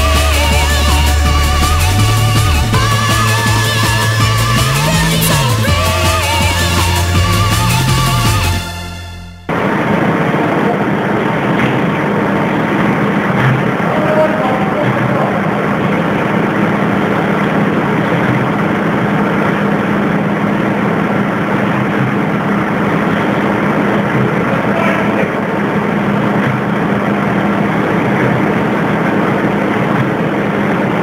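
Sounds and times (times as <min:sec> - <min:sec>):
continuous rushing noise: 0:00.0 - 0:08.7, 0:09.4 - 0:31.0
background music with low note: 0:00.0 - 0:09.6
electric arc furnace hum: 0:00.0 - 0:31.0
loud mechanical noise: 0:00.0 - 0:31.0.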